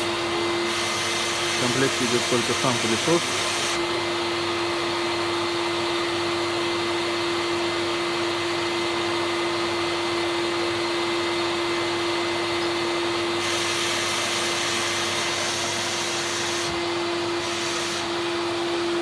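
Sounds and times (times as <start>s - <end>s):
vacuum cleaner running: 0.0s - 19.0s.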